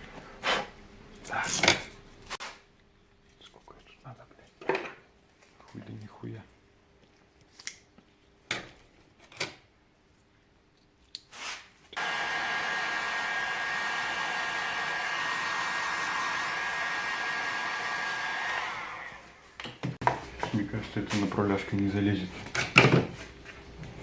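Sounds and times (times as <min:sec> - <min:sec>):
heat gun blowing and whining: 0:12.0 - 0:19.6.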